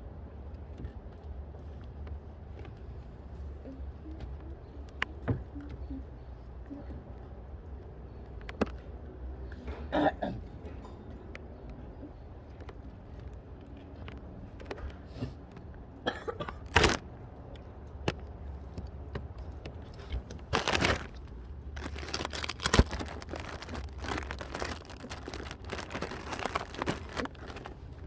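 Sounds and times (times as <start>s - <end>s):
person coughing: 9.9s - 11.0s, 16.0s - 16.6s
handling clicks and crackling: 16.5s - 28.0s.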